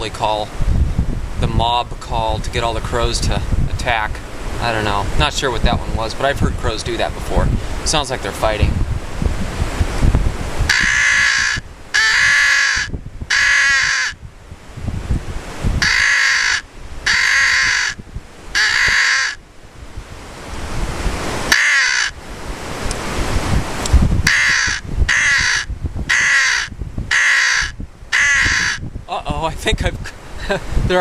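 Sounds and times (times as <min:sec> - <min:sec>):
wind rumble on microphone: 0:00.0 - 0:31.0
crow call caws: 0:10.7 - 0:14.2, 0:15.8 - 0:18.0, 0:18.6 - 0:19.4, 0:21.5 - 0:22.2, 0:24.3 - 0:28.8.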